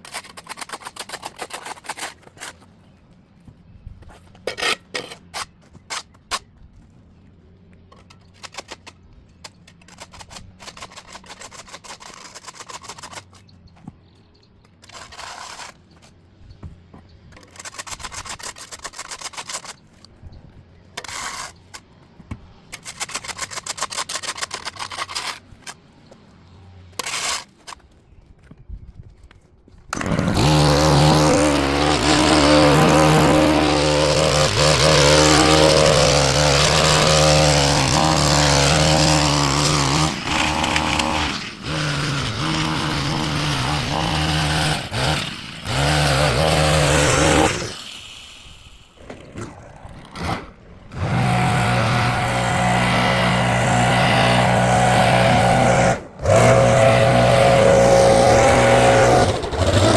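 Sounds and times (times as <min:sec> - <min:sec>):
small gas engine running: 0:29.9 - 0:59.9.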